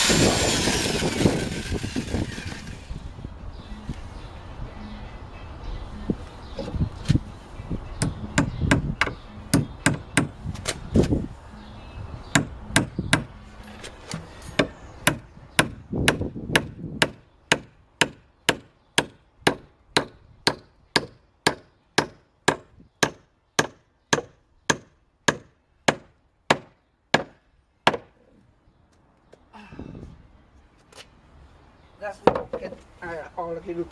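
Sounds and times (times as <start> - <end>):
hammer striking nails in wood: 8.0 - 10.3, 14.1 - 28.1.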